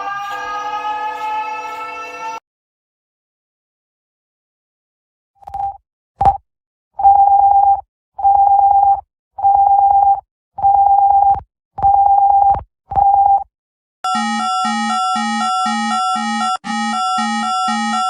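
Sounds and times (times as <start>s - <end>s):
loud alarm beeps: 14.0s - 18.0s
pulsing electronic alert tones: 14.1s - 18.0s.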